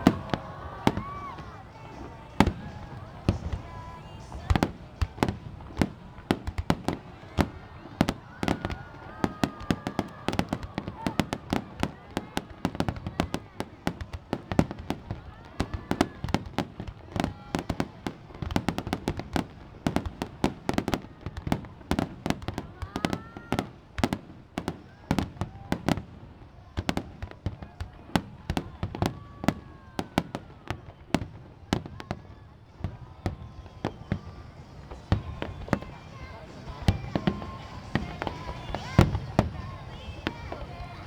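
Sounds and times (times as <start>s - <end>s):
firework whistles: 0.0s - 11.4s, 32.2s - 41.0s
fireworks bangs: 0.0s - 41.0s.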